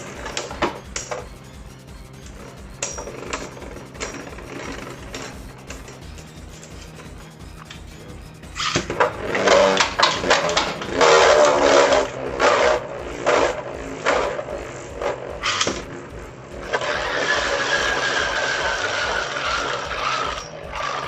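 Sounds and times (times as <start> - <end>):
spinning top whirring: 0.0 - 21.0
spinning tops clashing: 0.0 - 21.0.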